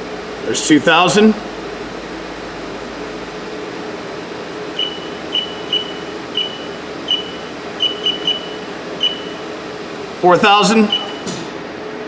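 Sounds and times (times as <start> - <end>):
machine spindle humming: 0.0 - 11.6
short high beeps: 4.8 - 9.5, 10.8 - 11.3.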